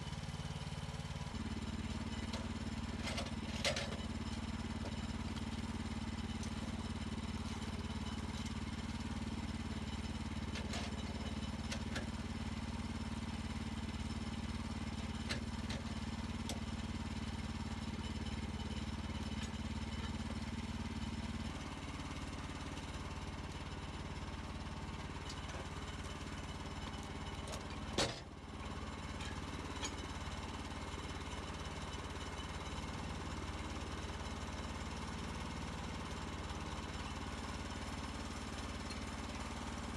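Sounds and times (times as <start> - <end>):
sawmill engine running: 15.9 - 39.9.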